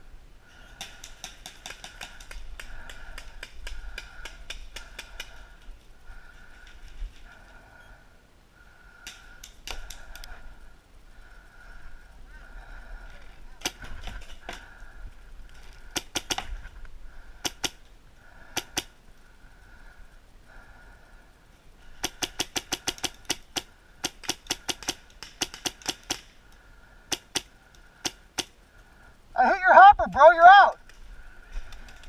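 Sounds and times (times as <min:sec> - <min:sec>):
paintball markers firing: 0:22.0 - 0:26.3.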